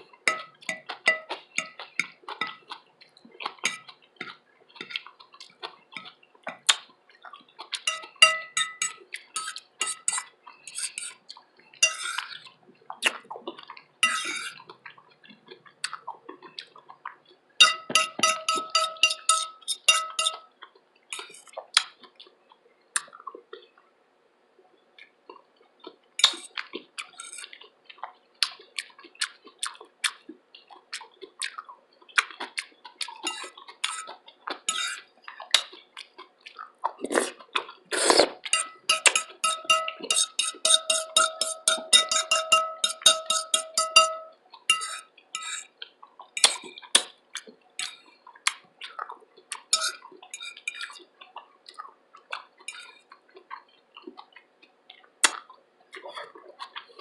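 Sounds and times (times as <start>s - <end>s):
chewing: 0.0s - 24.0s, 24.6s - 57.0s
cutlery scraping on a plate: 0.3s - 2.7s, 3.6s - 3.9s, 7.8s - 11.2s, 11.8s - 12.4s, 14.0s - 14.6s, 17.6s - 20.5s, 21.1s - 21.5s, 26.2s - 26.5s, 27.1s - 27.5s, 33.2s - 34.1s, 34.7s - 35.0s, 38.0s - 45.7s, 46.4s - 46.7s, 49.7s - 51.0s, 52.7s - 53.0s
steady ringing tone: 7.9s - 10.0s, 17.6s - 20.5s, 38.6s - 45.6s.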